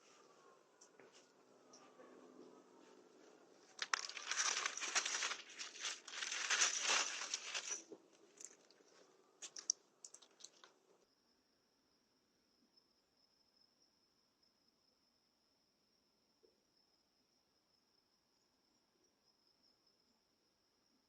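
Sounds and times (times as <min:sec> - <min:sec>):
crinkling rustling noise: 0:03.6 - 0:10.8.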